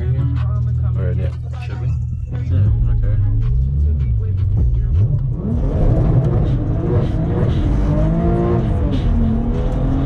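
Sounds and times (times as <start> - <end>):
car engine revving hard: 5.2 - 10.0.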